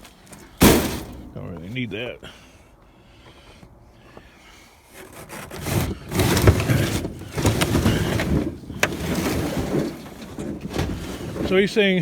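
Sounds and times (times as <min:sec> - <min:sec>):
junk scraping and dragging: 0:00.0 - 0:02.1, 0:04.9 - 0:12.0
clattering: 0:00.6 - 0:01.6.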